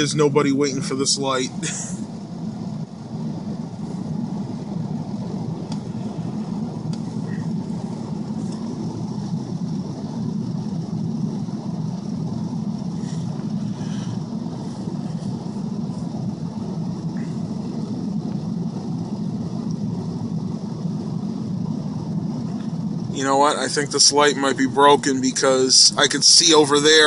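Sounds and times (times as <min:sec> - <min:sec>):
truck engine running: 0:00.0 - 0:27.0.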